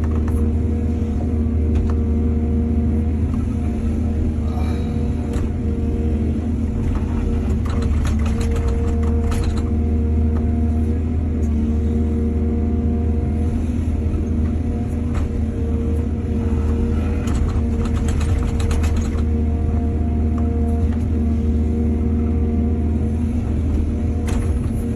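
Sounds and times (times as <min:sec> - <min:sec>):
excavator diesel engine drone: 0:00.0 - 0:24.9
rapid clattering and knocking: 0:06.9 - 0:09.7, 0:17.2 - 0:19.4.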